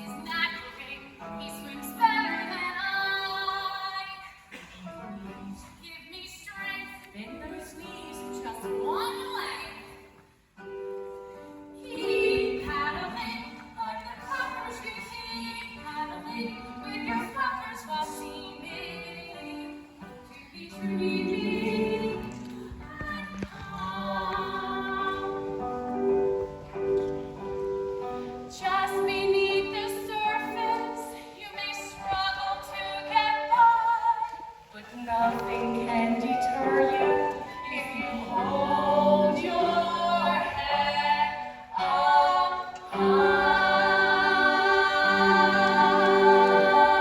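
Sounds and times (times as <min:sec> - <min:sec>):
chorus singing: 0:35.0 - 0:47.0.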